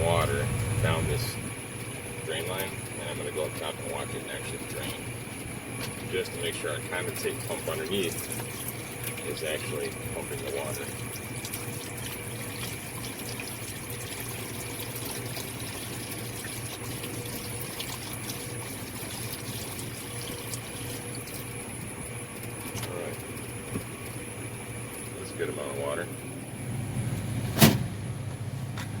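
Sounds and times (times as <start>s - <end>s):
water pouring into drain line: 0.0s - 26.2s
mechanical hum: 0.0s - 29.0s.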